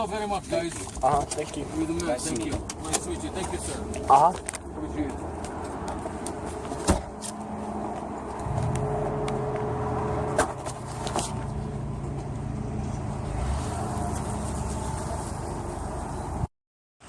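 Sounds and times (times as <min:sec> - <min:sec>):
car engine running: 0:03.1 - 0:15.8.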